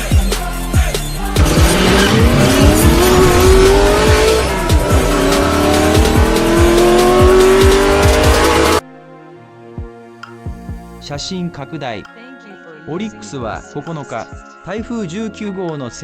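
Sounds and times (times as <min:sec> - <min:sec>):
electronic music with beat: 0:00.0 - 0:08.8
race car engine revving: 0:01.1 - 0:08.8.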